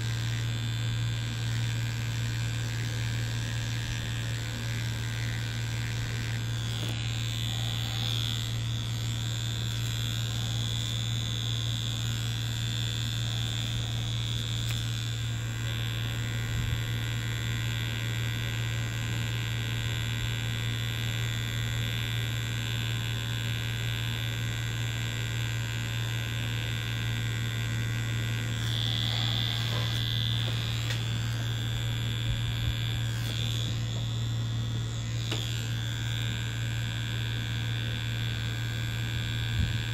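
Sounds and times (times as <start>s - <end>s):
tattoo machine buzzing: 0.0s - 39.9s.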